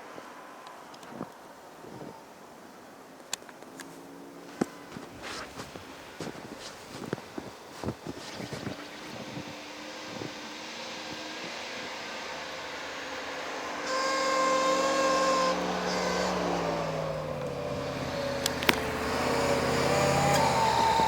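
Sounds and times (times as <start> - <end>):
off-road vehicle engine running: 3.5 - 21.0
sharp clicks: 15.9 - 21.0.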